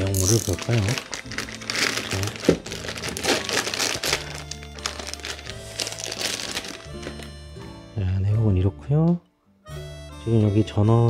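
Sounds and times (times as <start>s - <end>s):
packaging crinkling and rustling: 0.0s - 7.3s
background music with low tones: 0.0s - 11.0s.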